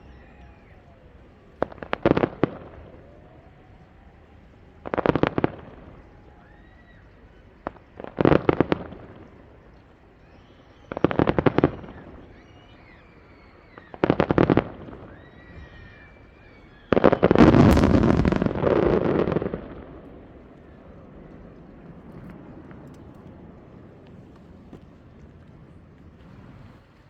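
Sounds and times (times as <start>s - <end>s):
fireworks crackling and banging: 0.0s - 27.0s.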